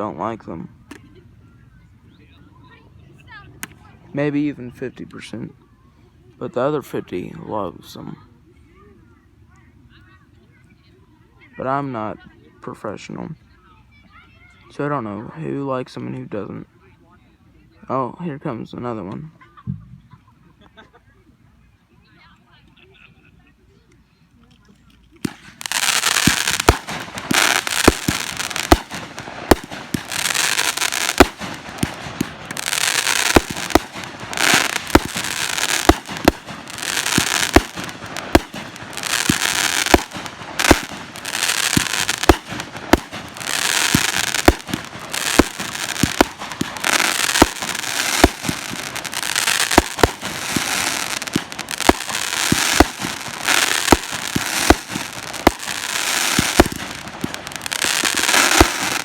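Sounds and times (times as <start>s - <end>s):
firework booms: 25.2s - 59.0s
firework crackling: 25.2s - 59.0s.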